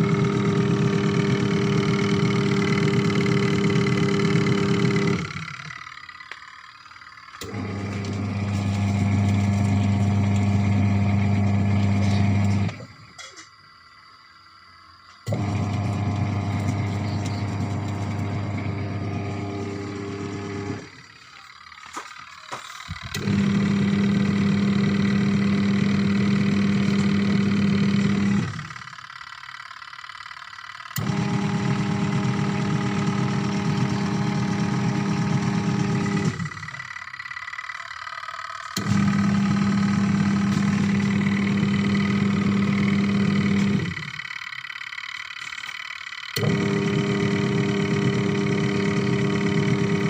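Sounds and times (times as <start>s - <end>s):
washing machine motor humming: 0.0s - 13.8s, 14.7s - 50.0s.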